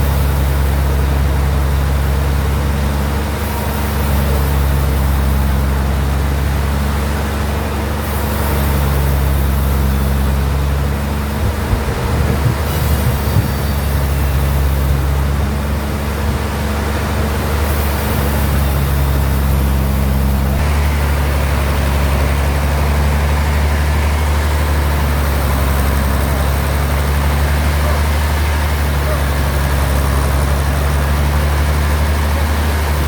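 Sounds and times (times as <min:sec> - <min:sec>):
bandsaw droning: 0:08.0 - 0:16.2, 0:17.5 - 0:33.0.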